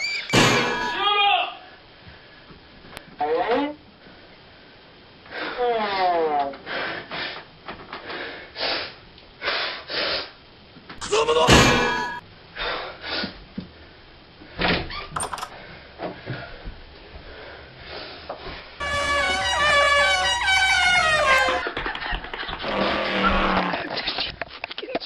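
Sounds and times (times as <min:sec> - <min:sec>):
cartoon sound effects: 0:00.0 - 0:01.0
thumps and bangs: 0:00.3 - 0:01.0, 0:11.4 - 0:12.2
person yelling: 0:00.9 - 0:01.6.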